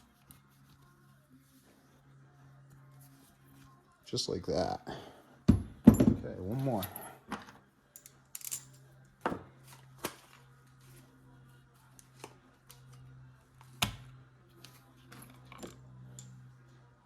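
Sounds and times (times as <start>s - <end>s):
metal hardware clicking and clinking: 7.9s - 8.8s.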